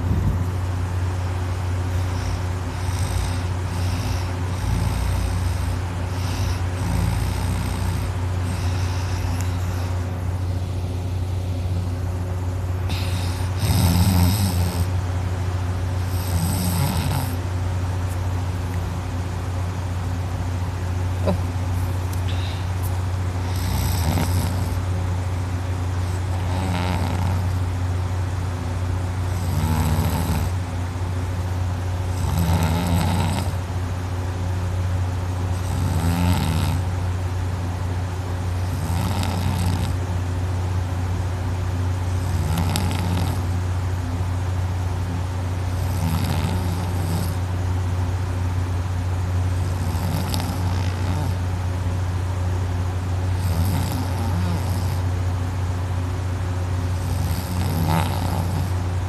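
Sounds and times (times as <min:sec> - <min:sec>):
steady low hum: 0:00.0 - 0:59.0
person snoring loudly: 0:01.9 - 0:10.9, 0:12.9 - 0:14.9, 0:16.0 - 0:17.4, 0:23.4 - 0:24.8, 0:26.1 - 0:27.6, 0:29.3 - 0:30.6, 0:32.1 - 0:33.6, 0:35.6 - 0:36.9, 0:38.6 - 0:40.0, 0:42.2 - 0:43.4, 0:45.8 - 0:47.5, 0:49.6 - 0:51.4, 0:53.4 - 0:55.0, 0:56.9 - 0:58.8.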